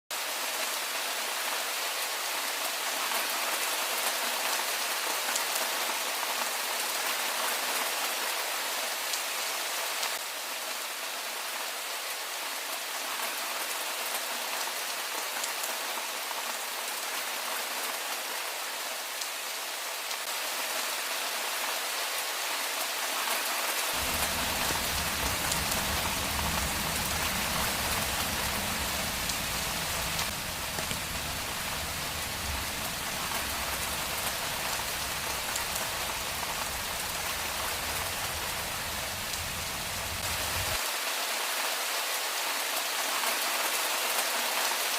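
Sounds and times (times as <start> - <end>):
rain falling on a street: 0.1 - 44.9
low rumble: 24.0 - 40.8.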